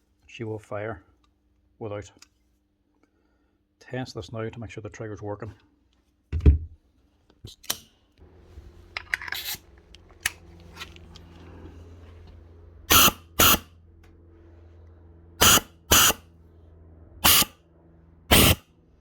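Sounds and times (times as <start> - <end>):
steady low hum: 8.0 - 19.0
pneumatic nailer bursts: 12.9 - 13.7, 15.4 - 16.3, 17.2 - 17.6, 18.3 - 18.7.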